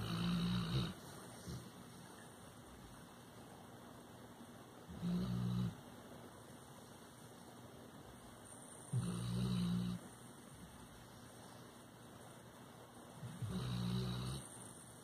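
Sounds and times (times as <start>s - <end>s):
dog snoring: 0.0s - 1.6s, 4.9s - 5.8s, 8.9s - 10.0s, 13.2s - 14.6s.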